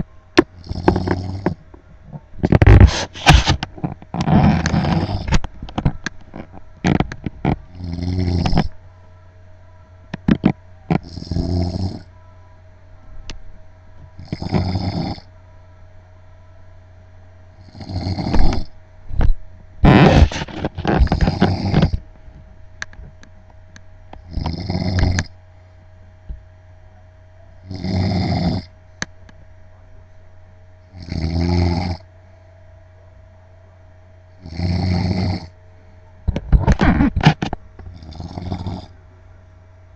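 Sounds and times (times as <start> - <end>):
faint steady hum: 0.0 - 39.9
man snoring: 0.6 - 1.6, 4.2 - 5.4, 7.7 - 8.8, 10.9 - 12.1, 14.2 - 15.3, 17.6 - 18.8, 19.8 - 22.0, 24.3 - 25.4, 27.6 - 28.7, 30.9 - 32.1, 34.4 - 35.6, 37.9 - 39.0.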